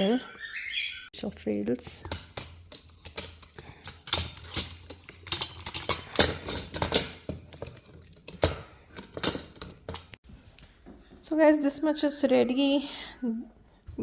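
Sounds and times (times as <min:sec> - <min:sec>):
metal parts clicking and knocking: 0:01.4 - 0:10.2.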